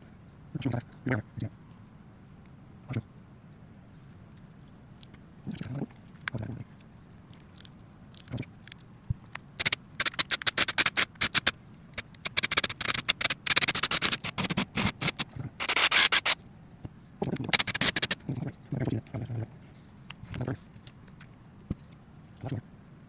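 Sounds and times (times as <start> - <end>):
small parts clicking and rattling: 7.3 - 16.4, 17.4 - 18.2.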